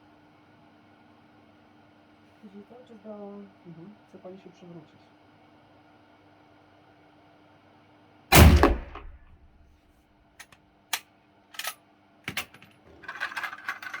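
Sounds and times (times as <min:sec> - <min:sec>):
gunshot: 0:08.3 - 0:09.4
clattering: 0:12.3 - 0:14.0.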